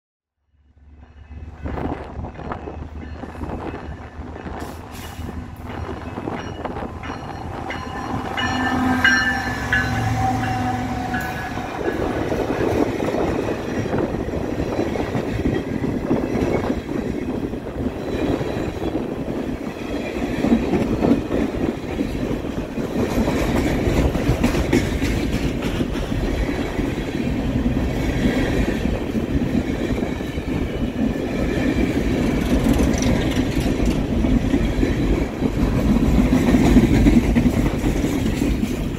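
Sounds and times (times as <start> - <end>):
train cars rumbling on rails: 0.8 - 38.9
train horn: 6.8 - 12.2.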